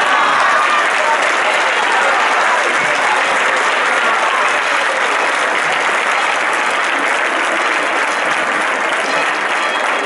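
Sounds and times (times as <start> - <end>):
large crowd applauding: 0.0 - 10.0.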